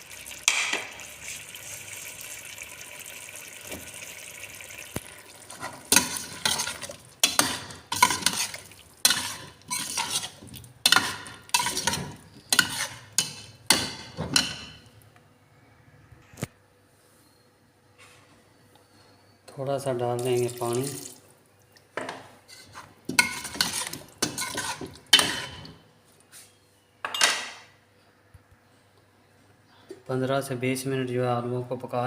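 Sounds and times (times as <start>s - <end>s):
potatoes sizzling in a pot: 0.0s - 14.0s, 22.6s - 25.6s
spoon scraping a pot: 5.5s - 14.8s, 22.5s - 25.7s.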